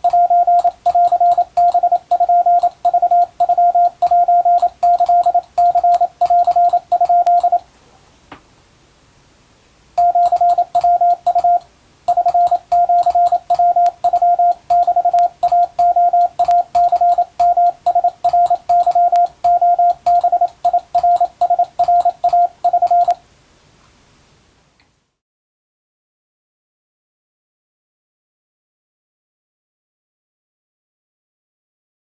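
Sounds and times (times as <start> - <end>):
morse code beeps: 0.0 - 7.6, 10.0 - 23.2.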